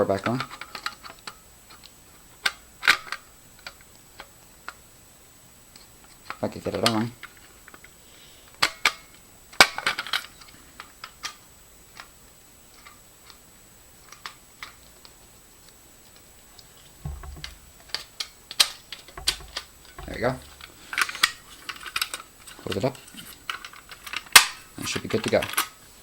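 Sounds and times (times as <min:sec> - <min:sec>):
handling clatter: 0:16.8 - 0:25.8.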